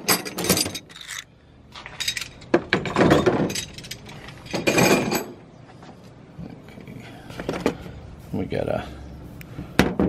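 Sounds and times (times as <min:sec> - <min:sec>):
metal tools rattling in drawer: 0:00.0 - 0:01.3, 0:01.9 - 0:05.4.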